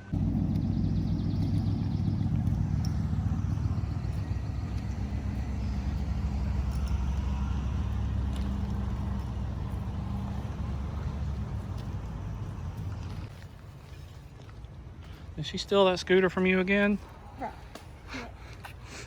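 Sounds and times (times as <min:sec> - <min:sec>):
wind buffeting microphone: 0:00.0 - 0:13.4.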